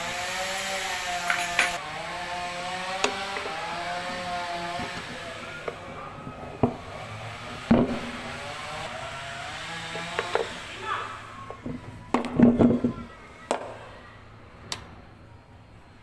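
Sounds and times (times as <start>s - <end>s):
motor droning with wavering whine: 0.0s - 16.0s
sharp knocks: 2.9s - 3.9s, 7.4s - 8.8s.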